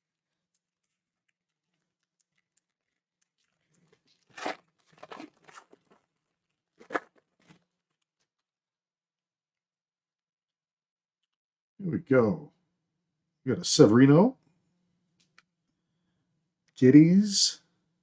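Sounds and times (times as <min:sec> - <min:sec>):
card pack wrapper tearing: 0:03.4 - 0:06.1, 0:06.7 - 0:07.6.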